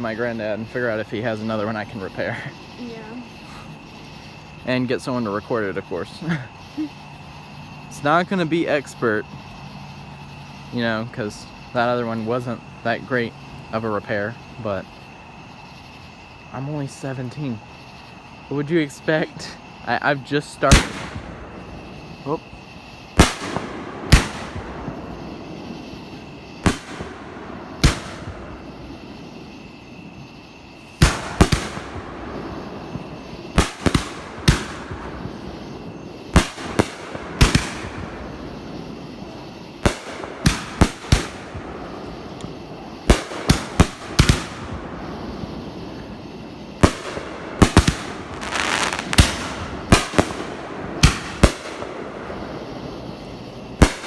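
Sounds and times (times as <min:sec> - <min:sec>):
fireworks crackling: 0:00.0 - 0:54.0
fireworks banging: 0:15.8 - 0:54.0.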